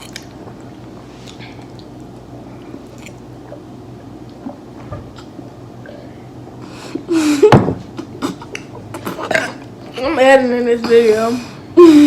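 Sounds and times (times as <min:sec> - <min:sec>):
chewing and mouth smacks: 0:00.0 - 0:03.6
steady low hum: 0:00.0 - 0:12.0.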